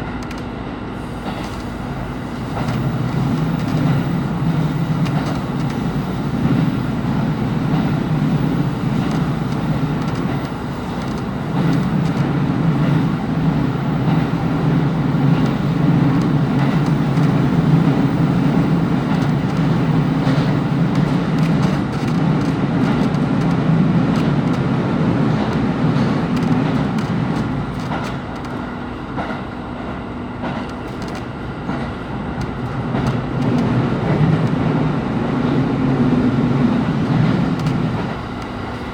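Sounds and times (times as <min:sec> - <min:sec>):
diesel engine drone: 0:00.1 - 0:29.0
wheel and rail noise: 0:00.2 - 0:38.9
clicks over rail joints: 0:02.5 - 0:29.5, 0:30.4 - 0:34.9, 0:36.6 - 0:38.8.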